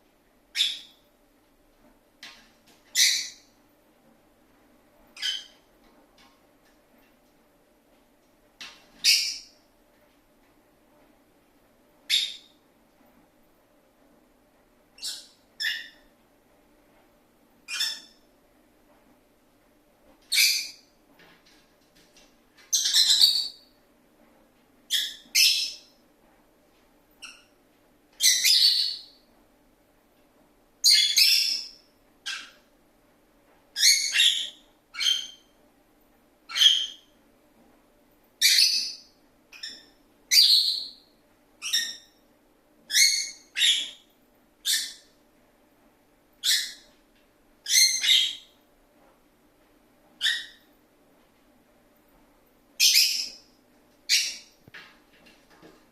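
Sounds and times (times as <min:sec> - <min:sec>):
lovebird chirping: 0:00.6 - 0:01.0, 0:02.9 - 0:03.4, 0:05.2 - 0:05.6, 0:09.0 - 0:09.5, 0:12.1 - 0:12.5, 0:15.0 - 0:16.0, 0:17.7 - 0:18.2, 0:20.3 - 0:20.8, 0:22.7 - 0:23.6, 0:24.9 - 0:25.9, 0:28.2 - 0:29.2, 0:30.8 - 0:32.5, 0:33.8 - 0:35.5, 0:38.4 - 0:41.0, 0:42.9 - 0:44.0, 0:44.6 - 0:45.1, 0:46.4 - 0:46.9, 0:47.6 - 0:48.5, 0:50.2 - 0:50.6, 0:52.8 - 0:53.4, 0:54.1 - 0:54.5.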